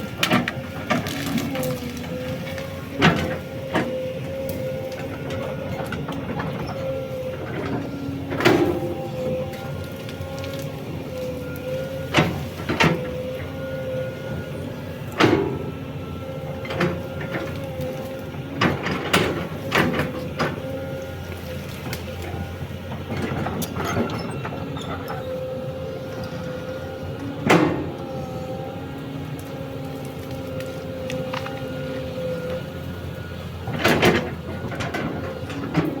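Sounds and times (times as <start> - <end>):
excavator hydraulic whine: 0.0 - 36.0
sharp knocks and cracks: 0.2 - 7.0.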